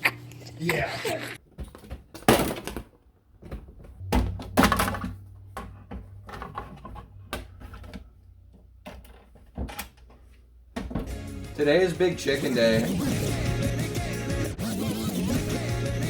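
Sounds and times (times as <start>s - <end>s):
knocks and thuds: 3.5s - 6.1s, 10.8s - 11.2s
low steady hum: 4.0s - 9.3s.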